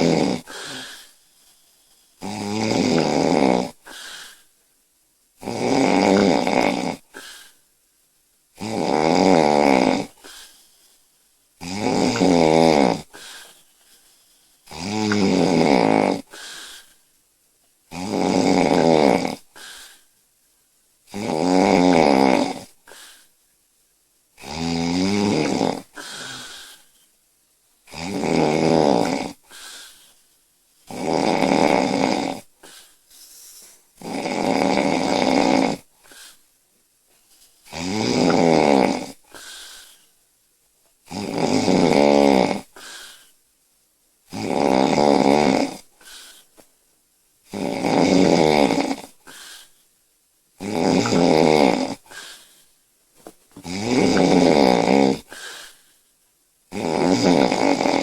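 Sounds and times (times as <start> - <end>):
woman snoring loudly: 0.0 - 1.1, 2.2 - 4.4, 5.4 - 7.5, 8.6 - 10.5, 11.6 - 13.6, 14.7 - 16.9, 17.9 - 20.0, 21.1 - 23.2, 24.4 - 26.9, 27.9 - 30.0, 30.9 - 32.9, 34.0 - 36.4, 37.7 - 39.9, 41.1 - 43.2, 44.3 - 46.4, 47.5 - 49.6, 50.6 - 52.5, 53.6 - 55.8, 56.7 - 58.0
soft breathing: 0.0 - 2.2, 10.1 - 11.4, 32.4 - 34.0, 35.8 - 37.7, 45.8 - 46.7, 51.0 - 53.4, 55.2 - 56.1.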